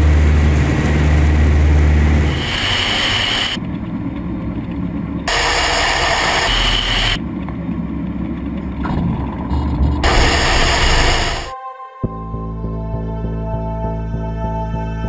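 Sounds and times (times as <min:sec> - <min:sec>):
jet engines running: 0:00.0 - 0:11.5.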